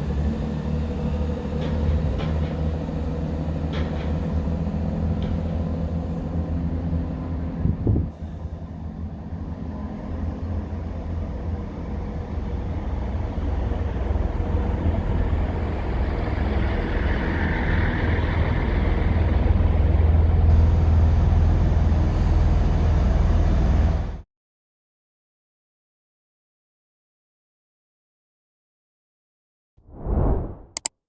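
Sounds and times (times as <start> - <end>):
diesel train engine rumble: 0.0 - 24.2.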